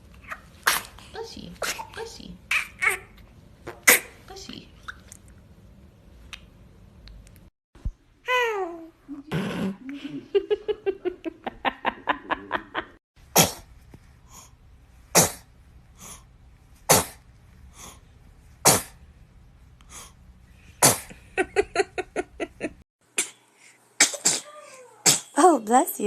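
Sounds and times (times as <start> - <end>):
baby sneezing: 0.6 - 1.0, 3.7 - 4.2, 15.2 - 15.4, 16.9 - 17.2, 18.6 - 19.0, 20.8 - 21.1, 24.0 - 25.4.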